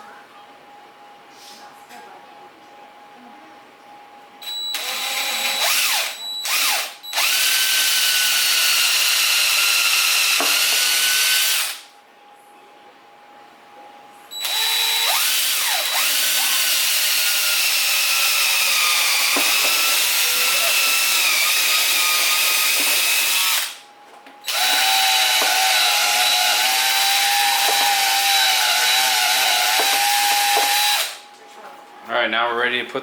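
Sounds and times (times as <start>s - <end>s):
power drill boring into wood: 4.4s - 11.8s, 14.4s - 23.8s, 24.5s - 31.2s.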